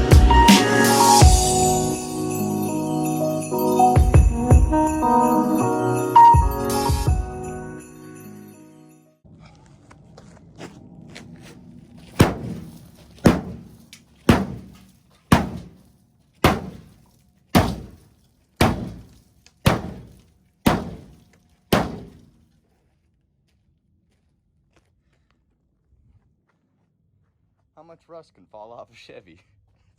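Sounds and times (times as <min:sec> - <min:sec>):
heavy ringing knocks: 0:12.2 - 0:15.8, 0:16.4 - 0:16.9, 0:17.6 - 0:18.0, 0:18.6 - 0:21.2, 0:21.8 - 0:22.2.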